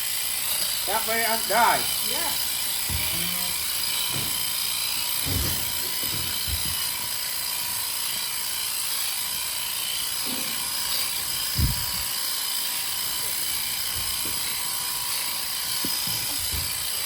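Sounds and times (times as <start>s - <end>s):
electric shears whining: 0.0s - 17.0s
low thumps: 11.5s - 12.0s.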